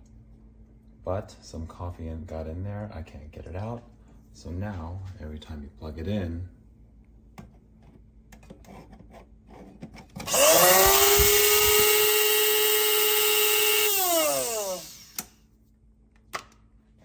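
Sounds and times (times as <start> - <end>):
coffee grinder motor spinning: 10.2 - 15.3.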